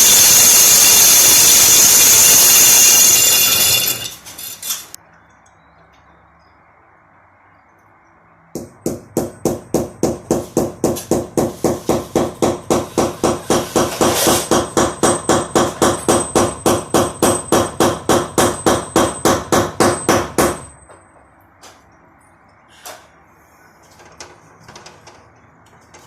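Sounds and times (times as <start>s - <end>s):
hammer striking: 8.6s - 20.8s.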